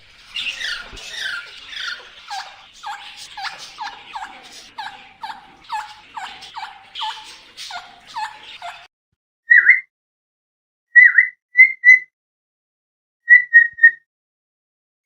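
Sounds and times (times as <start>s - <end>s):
parrot calling: 0.0s - 8.9s.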